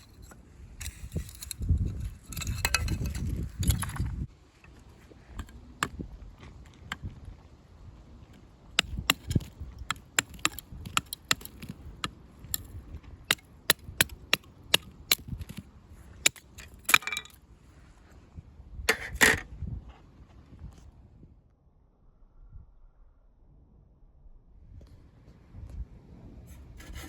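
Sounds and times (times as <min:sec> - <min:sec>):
firewood cracking and snapping: 0:08.8 - 0:11.9.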